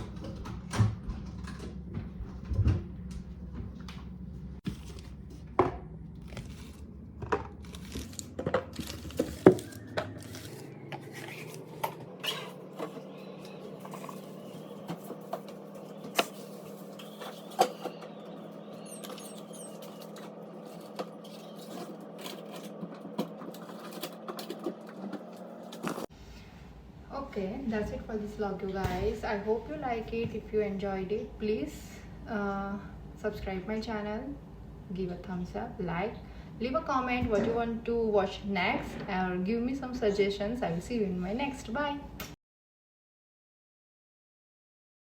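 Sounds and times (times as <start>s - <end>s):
steady low hum: 0.0s - 42.4s
kitchen items knocking and clinking: 4.6s - 26.1s.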